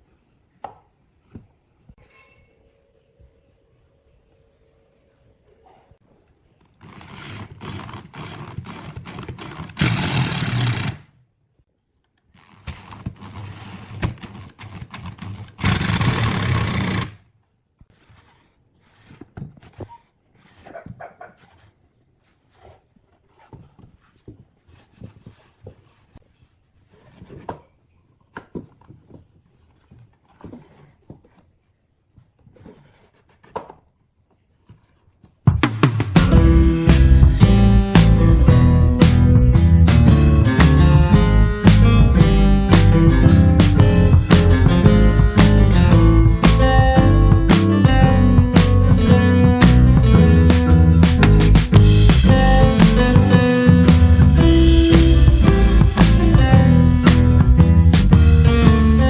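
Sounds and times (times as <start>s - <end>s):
hand scraping wood: 6.6s - 11.0s, 12.3s - 17.2s, 17.8s - 27.8s, 28.6s - 33.9s.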